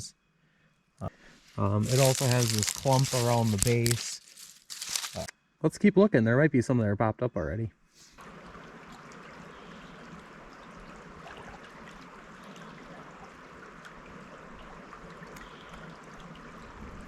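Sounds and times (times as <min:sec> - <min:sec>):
stream water flowing: 0:08.2 - 0:17.0.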